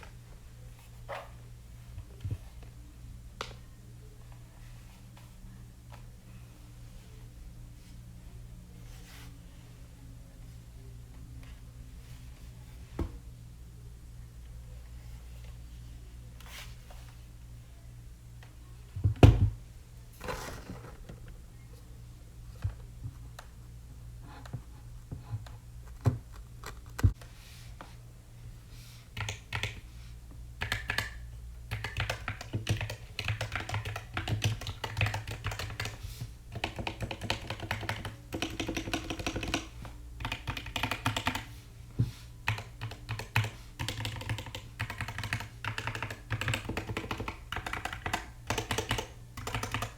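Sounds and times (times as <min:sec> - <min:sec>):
keyboard typing: 0:29.2 - 0:29.8, 0:30.6 - 0:41.5, 0:42.4 - 0:49.9.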